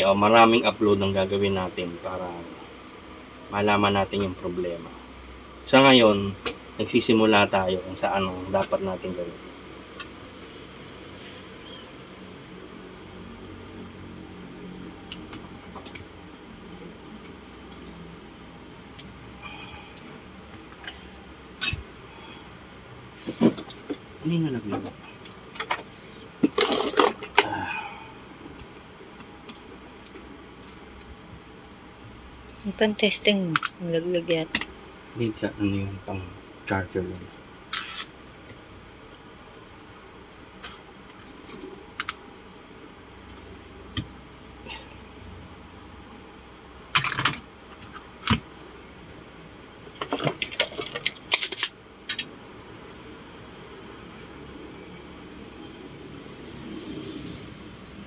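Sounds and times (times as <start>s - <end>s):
objects rattling: 24.7s - 27.6s, 49.9s - 52.3s
small hard objects clattering: 26.4s - 27.4s.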